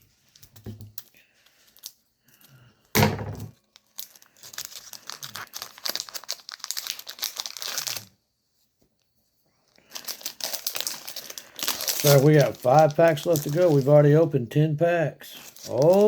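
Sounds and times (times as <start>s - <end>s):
foil wrapper crinkling: 0.0s - 2.6s, 3.5s - 8.2s, 9.7s - 14.4s, 15.2s - 16.0s.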